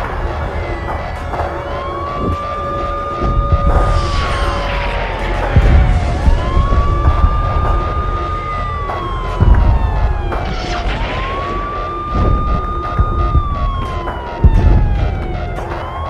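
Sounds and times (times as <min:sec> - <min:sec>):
emergency siren wailing: 0:00.0 - 0:16.0
deep low thuds: 0:02.2 - 0:04.4, 0:05.5 - 0:16.0.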